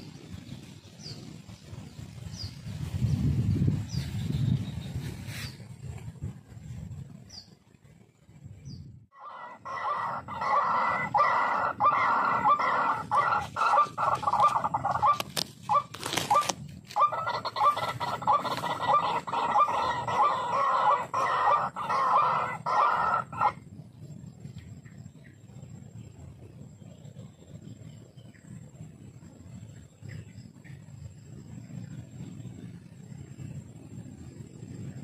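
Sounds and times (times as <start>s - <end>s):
waterhen harsh calls: 9.2s - 23.6s.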